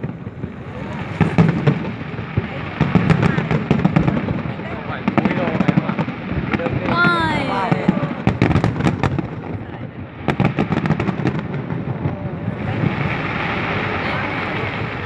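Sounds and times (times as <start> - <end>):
fireworks bangs: 0.0 - 15.0
noisy wash of fireworks: 0.0 - 15.0.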